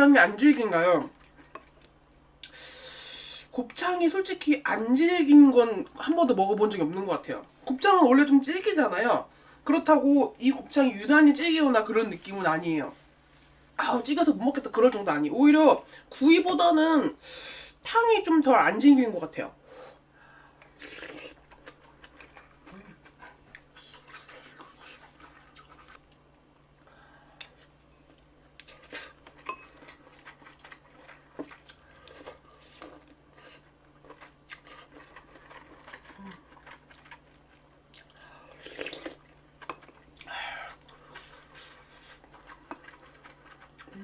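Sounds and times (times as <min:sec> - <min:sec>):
person chewing food: 0:20.6 - 0:44.0.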